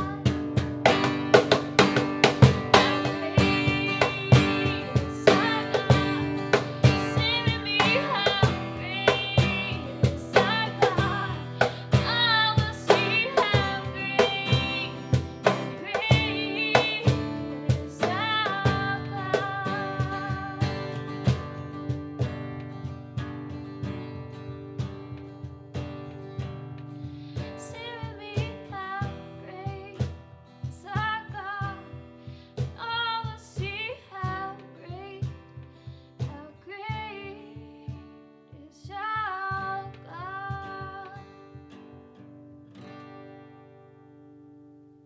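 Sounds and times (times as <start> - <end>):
acoustic guitar strumming chords: 0.0 - 32.8.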